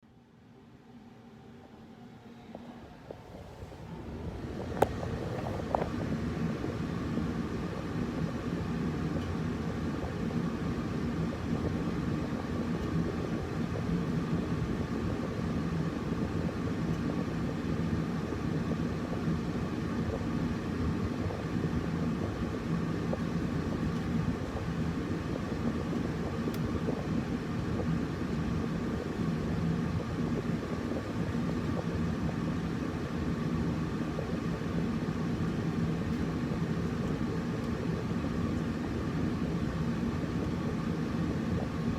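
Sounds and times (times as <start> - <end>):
air conditioner humming: 0.0 - 41.9.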